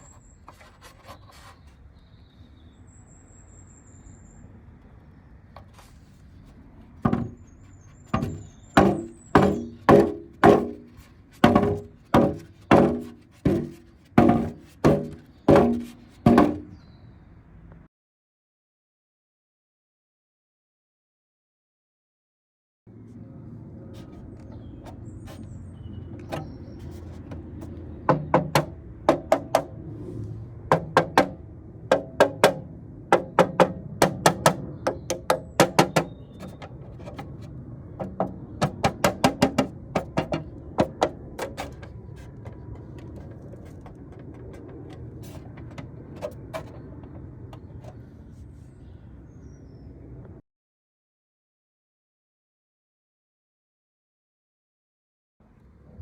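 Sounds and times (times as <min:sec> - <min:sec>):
low road rumble: 0:00.0 - 0:17.9, 0:22.9 - 0:50.4
wheel cover rattling clacks: 0:07.0 - 0:16.8, 0:24.5 - 0:29.8, 0:30.7 - 0:48.0.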